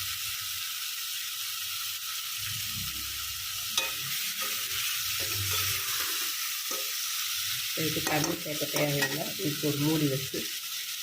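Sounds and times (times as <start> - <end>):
chicken sizzling in a pot: 0.0 - 11.0.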